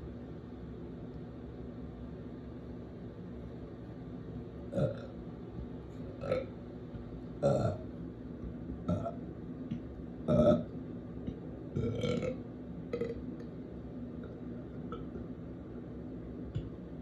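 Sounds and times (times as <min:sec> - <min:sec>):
person burping: 0:04.7 - 0:05.1, 0:06.2 - 0:06.5, 0:07.4 - 0:07.8, 0:08.9 - 0:09.2, 0:10.3 - 0:10.6, 0:11.8 - 0:12.4, 0:13.0 - 0:13.2.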